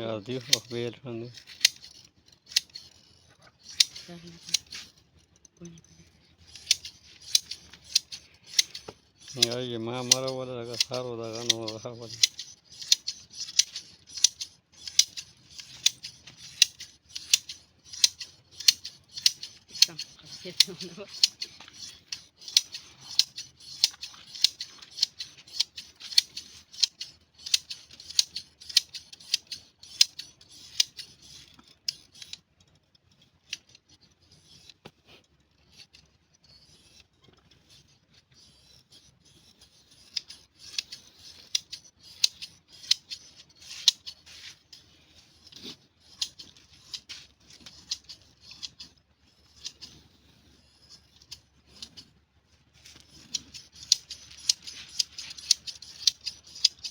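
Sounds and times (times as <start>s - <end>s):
hand shears snipping fleece: 0.0s - 1.9s, 3.6s - 4.9s, 6.5s - 31.0s, 39.8s - 50.1s, 52.8s - 56.9s.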